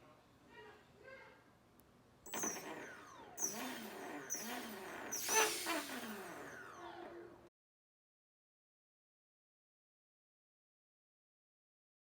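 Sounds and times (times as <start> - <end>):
drone motors whining: 2.3 - 7.4.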